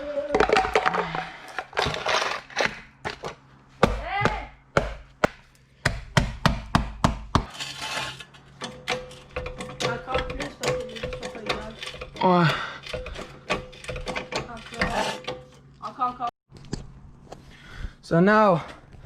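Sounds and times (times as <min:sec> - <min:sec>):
metal car jack knocks and clicks: 0:08.6 - 0:12.2.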